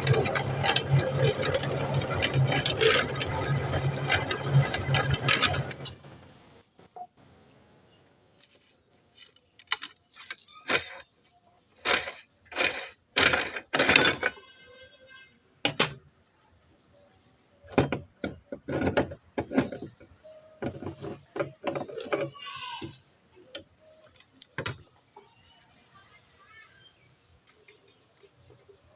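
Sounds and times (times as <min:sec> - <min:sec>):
meat grinder crunching and clattering: 0:00.0 - 0:06.1, 0:11.8 - 0:14.4.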